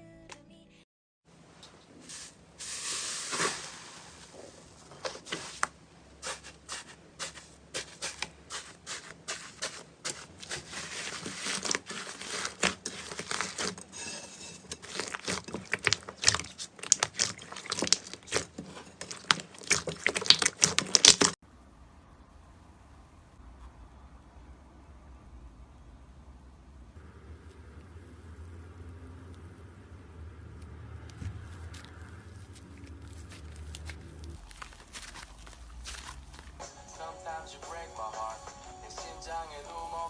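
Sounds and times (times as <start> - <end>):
slime squishing and popping: 14.9 - 21.4.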